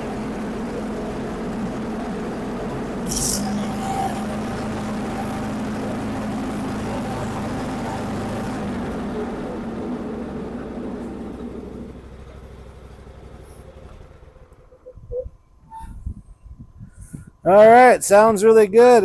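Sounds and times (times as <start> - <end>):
lawn mower running: 0.0 - 14.7.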